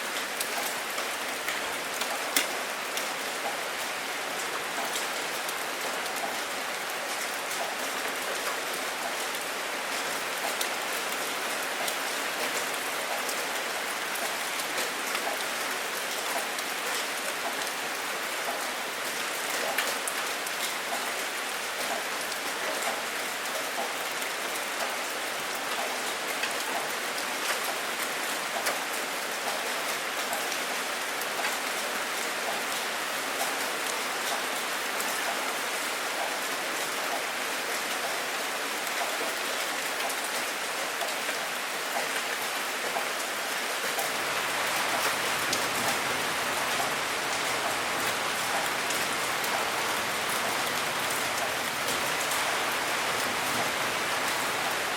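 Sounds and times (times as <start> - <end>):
steady rain patter: 0.0 - 54.9.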